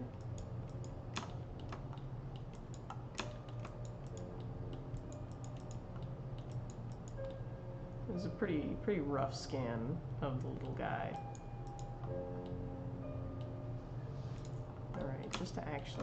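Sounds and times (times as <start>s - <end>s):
steady low hum: 0.0s - 16.0s
computer keyboard keys clicking: 0.1s - 7.4s, 10.6s - 12.6s, 14.4s - 16.0s.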